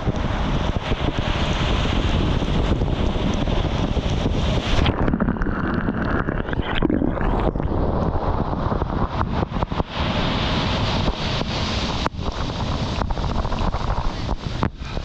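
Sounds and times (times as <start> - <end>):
rushing surf: 0.0 - 15.0
wind buffeting microphone: 0.0 - 15.0.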